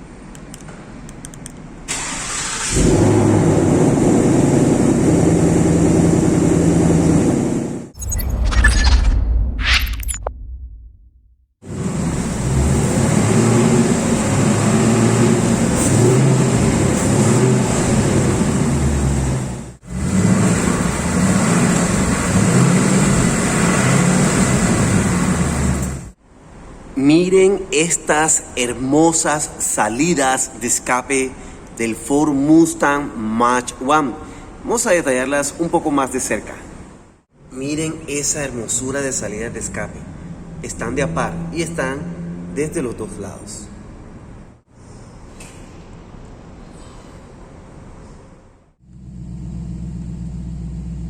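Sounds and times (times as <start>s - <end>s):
car engine cranking: 1.9s - 3.4s
low rumble: 8.0s - 11.5s
car engine idling fast: 48.9s - 51.0s.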